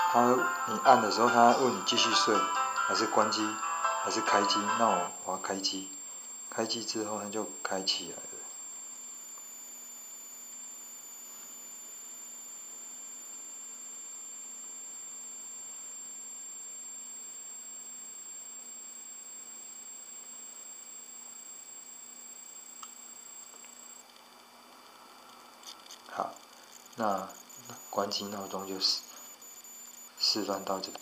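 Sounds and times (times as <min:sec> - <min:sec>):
high-pitched electronic whine: 0:00.0 - 0:05.9, 0:06.5 - 0:24.2, 0:25.2 - 0:31.0
faint low hum and hiss: 0:00.0 - 0:31.0
small click: 0:22.8 - 0:24.2.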